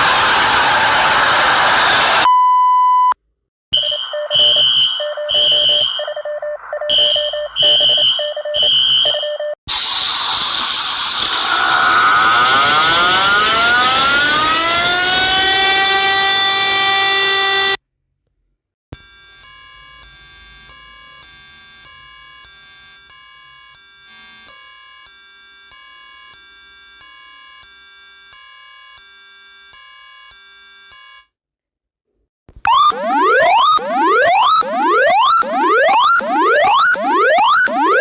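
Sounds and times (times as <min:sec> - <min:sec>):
buzzy alarm tone gliding down: 0:11.6 - 0:17.8, 0:32.7 - 0:38.0.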